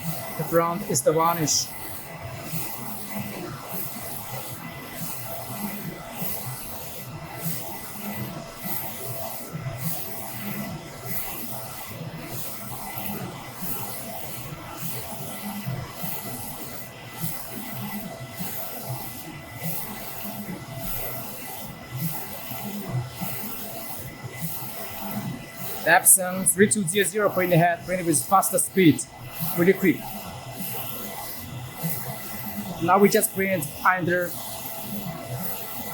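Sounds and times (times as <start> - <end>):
steady machine hum: 0.0 - 35.9
print-head carriage swishing: 22.1 - 35.9.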